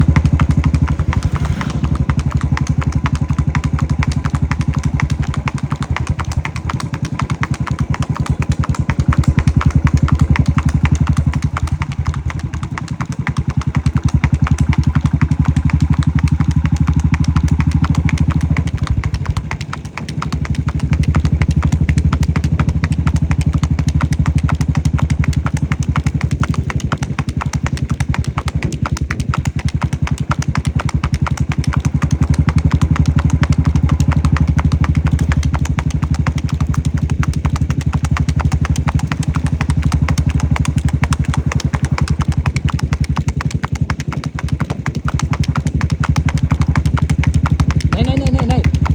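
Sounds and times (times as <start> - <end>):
motorcycle engine running: 0.0 - 48.9.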